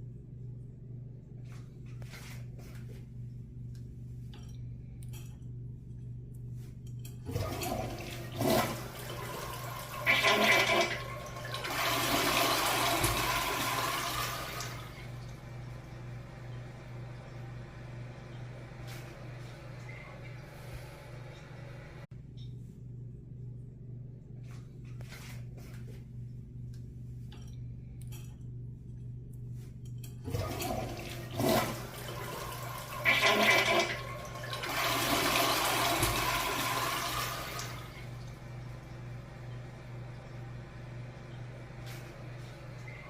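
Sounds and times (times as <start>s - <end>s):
toilet flushing: 7.3s - 22.1s, 30.2s - 43.0s.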